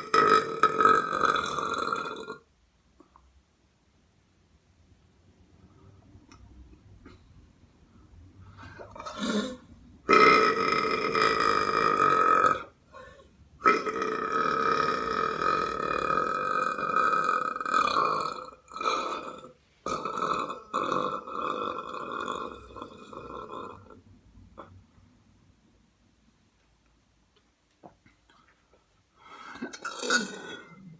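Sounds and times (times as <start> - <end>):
person belching: 0.0 - 2.5, 8.8 - 12.8, 13.6 - 24.0, 29.6 - 30.9.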